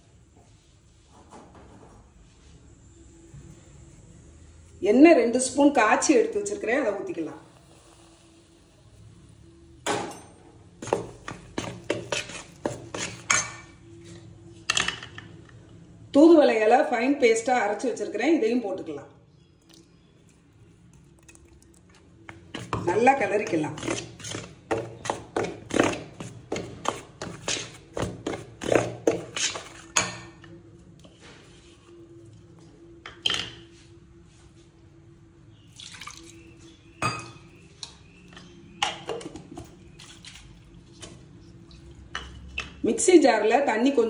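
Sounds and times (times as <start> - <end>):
utensil scraping bowl: 10.8 - 13.6, 22.6 - 30.2.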